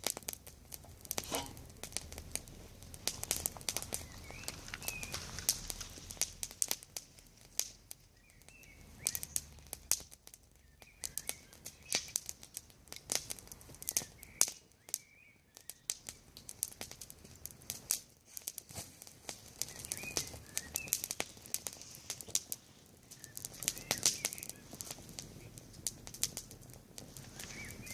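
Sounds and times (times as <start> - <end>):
campfire crackling and popping: 0.0 - 27.9
faint bird chirps: 4.0 - 5.4, 10.6 - 12.2, 19.6 - 21.1, 23.0 - 25.6, 27.2 - 27.9.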